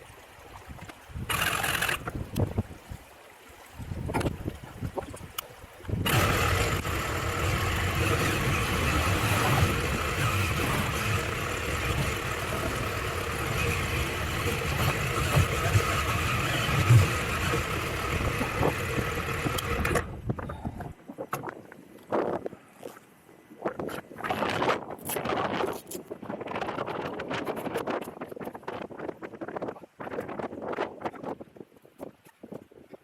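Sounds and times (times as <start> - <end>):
motorcycle engine running: 6.0 - 20.1.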